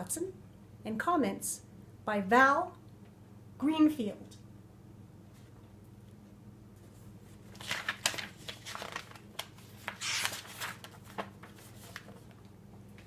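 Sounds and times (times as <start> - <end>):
faint steady hum: 0.0 - 13.0
paper rustling: 6.8 - 13.0
paper swish: 9.8 - 10.8.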